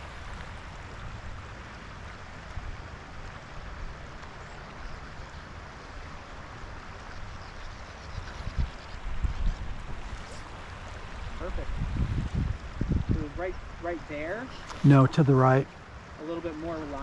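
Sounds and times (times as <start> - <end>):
stream water flowing: 0.0 - 17.0.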